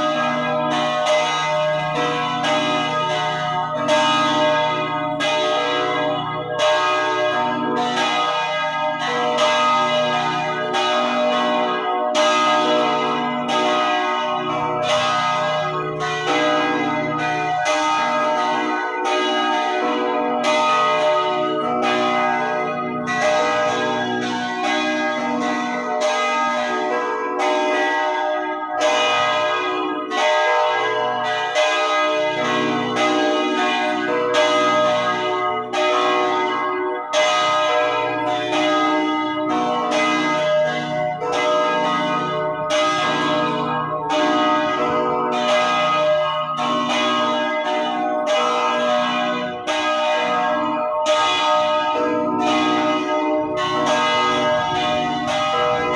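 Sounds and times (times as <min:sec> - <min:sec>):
church bells pealing: 0:00.0 - 0:55.9.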